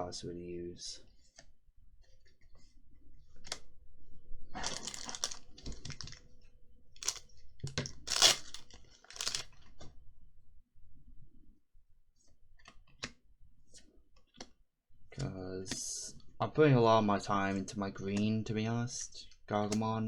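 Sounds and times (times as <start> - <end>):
trading cards rustling: 4.6 - 6.3, 7.0 - 9.7.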